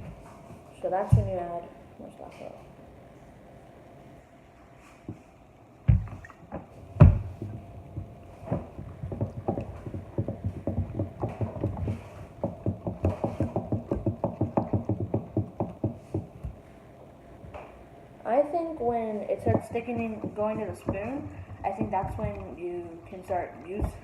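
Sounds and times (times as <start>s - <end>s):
thumps: 5.8s - 16.6s, 19.3s - 24.0s
spoon stirring sticky slime: 19.2s - 24.0s.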